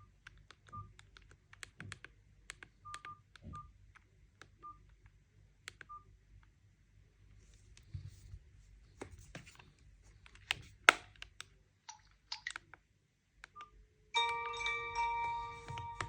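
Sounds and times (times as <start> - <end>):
phone ringtone: 14.2 - 16.0.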